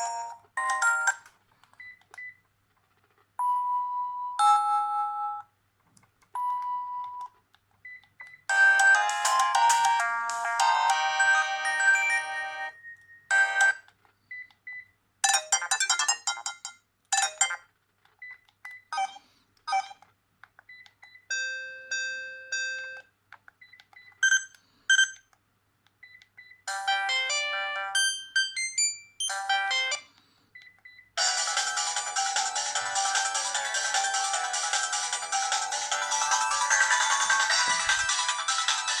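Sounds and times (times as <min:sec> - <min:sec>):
mobile phone ringtones: 0:08.5 - 0:13.8, 0:26.7 - 0:30.1, 0:31.2 - 0:39.0.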